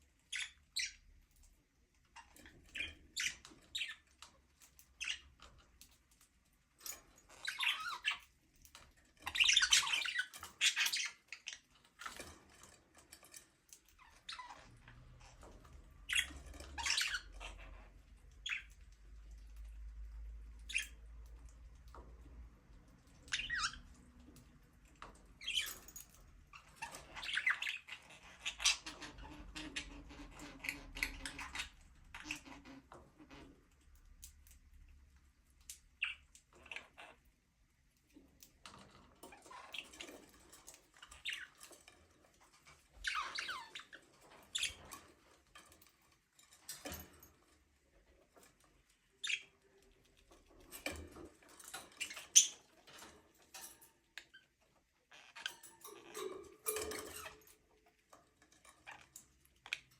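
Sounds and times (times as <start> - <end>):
budgerigars chirping and warbling: 0.1 - 1.1, 2.1 - 5.6, 7.2 - 8.3, 9.2 - 12.8, 14.0 - 21.5, 23.0 - 33.5, 35.8 - 37.2, 38.7 - 45.4, 49.1 - 49.8, 50.8 - 53.1.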